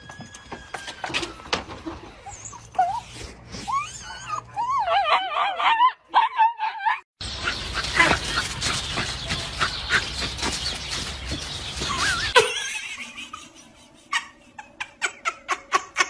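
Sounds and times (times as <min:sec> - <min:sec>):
dog whining and howling: 0:00.0 - 0:07.1.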